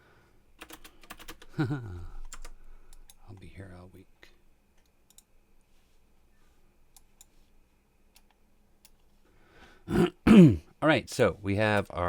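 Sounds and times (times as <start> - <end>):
computer mouse clicks: 4.7 - 5.3, 6.9 - 7.4, 8.1 - 9.1.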